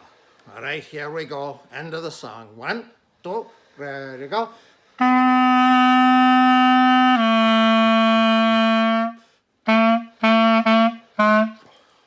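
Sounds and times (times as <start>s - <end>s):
clarinet playing notes: 5.0s - 11.8s.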